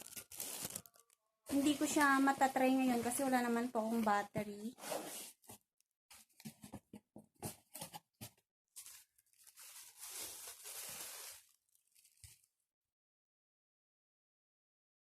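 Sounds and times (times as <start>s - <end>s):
packaging rustling tear: 0.0s - 1.2s, 8.8s - 12.5s
packaging crinkling: 0.0s - 2.0s, 8.8s - 12.5s.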